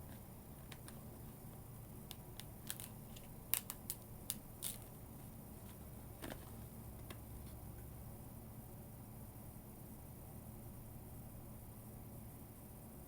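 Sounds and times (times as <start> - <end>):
plastic packaging clicks and snaps: 0.6 - 1.2, 2.0 - 5.0.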